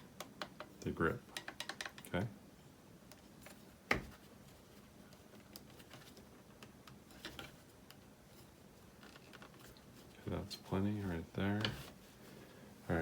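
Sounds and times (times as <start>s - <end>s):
small plastic parts clicking: 1.3s - 2.2s.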